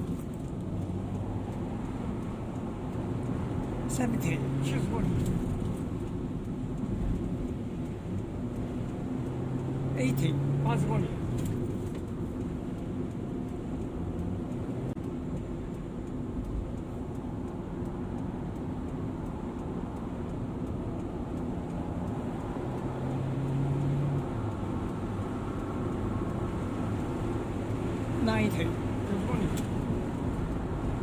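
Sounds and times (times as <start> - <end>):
car engine and road noise: 0.0 - 31.0.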